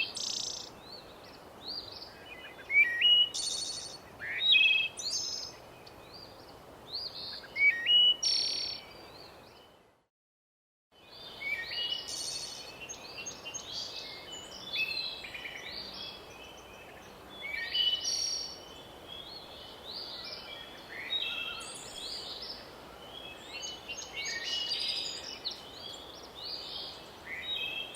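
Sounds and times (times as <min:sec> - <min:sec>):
faint background hiss: 0:00.0 - 0:10.0, 0:11.0 - 0:27.9
songbirds chirping and singing: 0:11.0 - 0:27.9.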